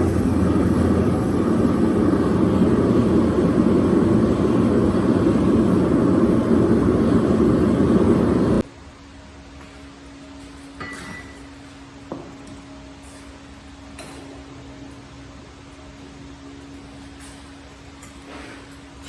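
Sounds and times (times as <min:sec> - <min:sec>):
low hum: 0:00.0 - 0:08.6
workshop equipment roar: 0:00.0 - 0:08.6.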